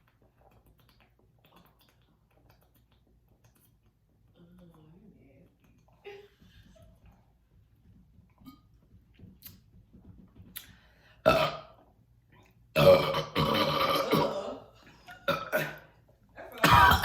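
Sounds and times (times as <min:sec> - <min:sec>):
person burping: 0:11.3 - 0:11.8, 0:12.8 - 0:15.9, 0:16.6 - 0:17.0.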